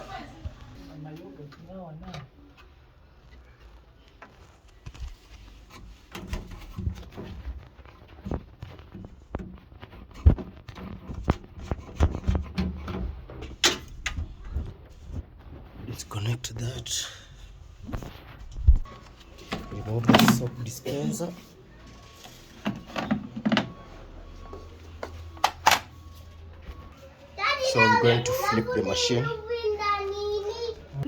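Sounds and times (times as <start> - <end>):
hands working on washing machine: 4.2 - 14.9.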